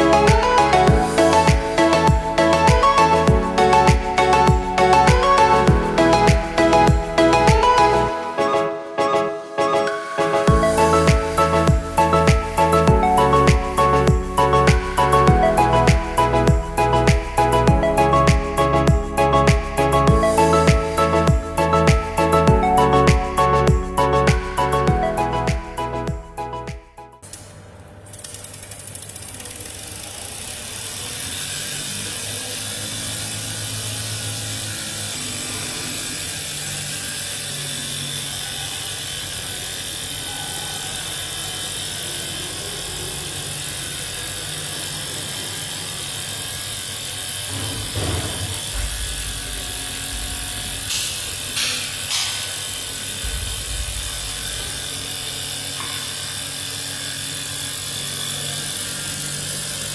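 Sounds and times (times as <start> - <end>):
mechanical ratcheting clatter: 28.1 - 59.9
loud knocks: 47.5 - 52.5.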